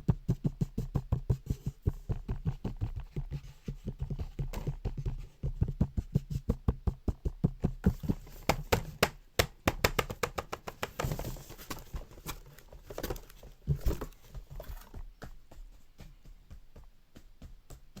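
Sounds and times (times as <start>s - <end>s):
hand clicking and knocking: 3.8s - 15.5s.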